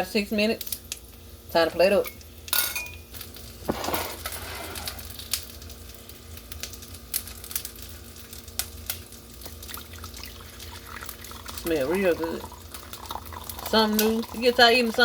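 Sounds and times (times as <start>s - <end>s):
utensil scraping pan: 3.6s - 5.1s.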